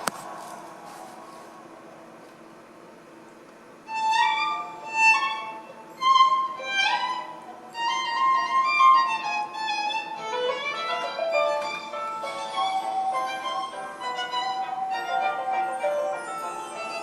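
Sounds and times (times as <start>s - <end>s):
faint steady hum: 0.0s - 17.0s
violin melody: 3.9s - 17.0s.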